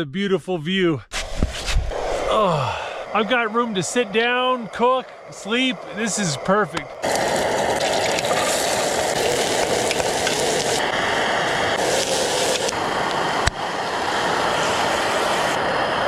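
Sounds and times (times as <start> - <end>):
food sizzling in a pot: 7.0 - 10.9, 11.8 - 12.9.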